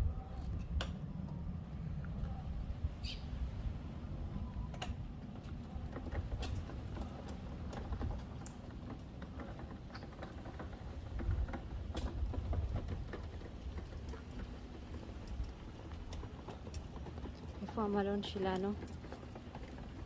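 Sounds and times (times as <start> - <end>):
steady low rumble: 0.0 - 8.7.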